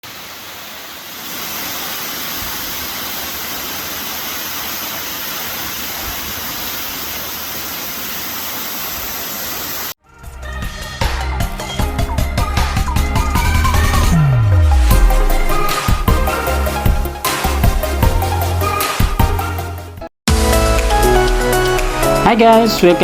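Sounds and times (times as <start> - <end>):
falling water rushing: 0.0 - 10.0, 11.4 - 17.7
music: 10.0 - 23.0.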